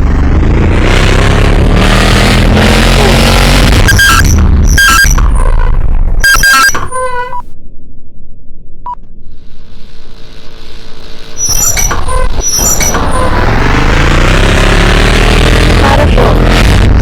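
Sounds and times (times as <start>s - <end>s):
vehicle engine revving: 0.0s - 5.6s, 11.2s - 17.0s.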